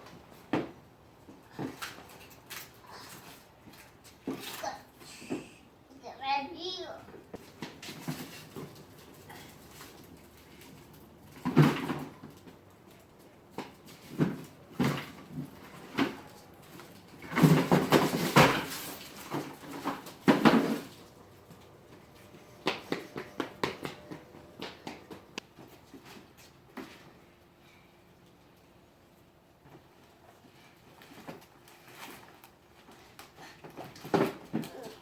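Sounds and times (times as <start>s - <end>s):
rustling: 29.7s - 35.0s.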